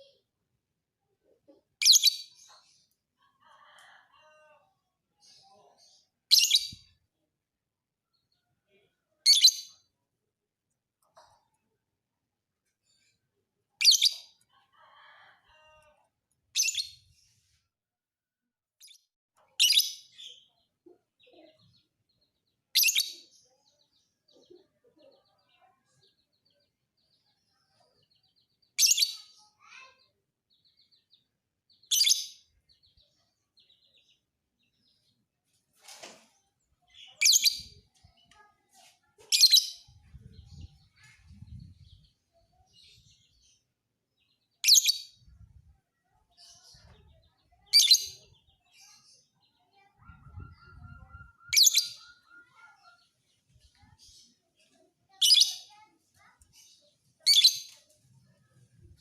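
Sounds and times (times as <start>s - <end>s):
faint bird twittering: 46.0s - 53.0s.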